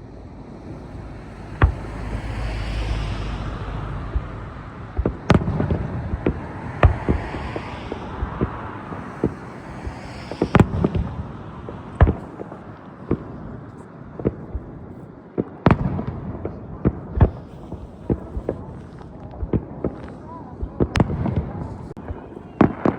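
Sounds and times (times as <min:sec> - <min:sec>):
hissing crackle: 0:00.0 - 0:14.8
firework bangs and booms: 0:00.6 - 0:22.9.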